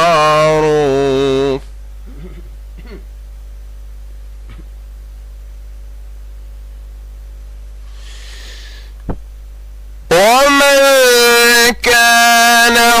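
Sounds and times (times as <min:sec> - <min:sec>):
low electrical hum: 0:00.0 - 0:13.0
breath-like hiss: 0:07.8 - 0:09.0.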